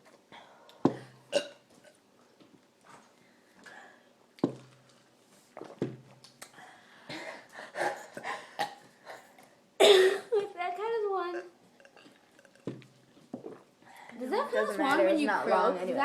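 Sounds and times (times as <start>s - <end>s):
person burping: 0.9s - 2.0s, 11.3s - 12.9s
soft breathing sounds: 2.2s - 4.2s, 6.5s - 9.6s, 13.8s - 14.3s.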